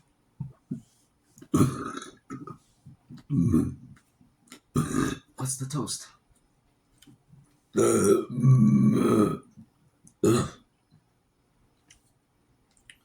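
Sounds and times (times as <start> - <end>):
man burping loudly: 1.5 - 2.6, 3.3 - 3.9, 4.8 - 5.3, 7.8 - 9.5, 10.2 - 10.6.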